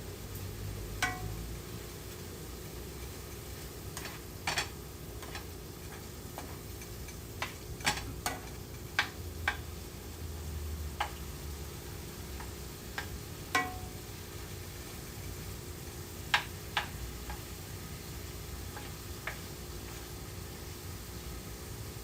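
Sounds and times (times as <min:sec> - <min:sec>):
utensil clinking against pan: 0:01.0 - 0:01.3, 0:04.0 - 0:09.7, 0:12.4 - 0:13.9.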